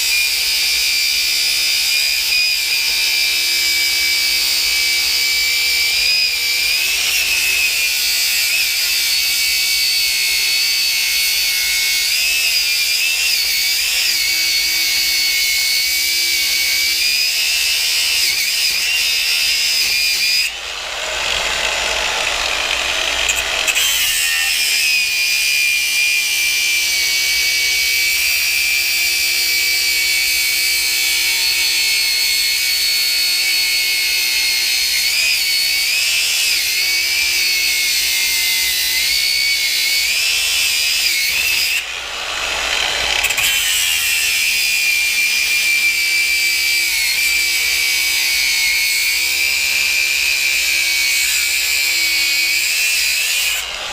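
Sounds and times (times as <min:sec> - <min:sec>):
angle grinder whining: 0:00.0 - 0:53.9
rough grinding noise: 0:19.4 - 0:24.8, 0:40.5 - 0:44.5.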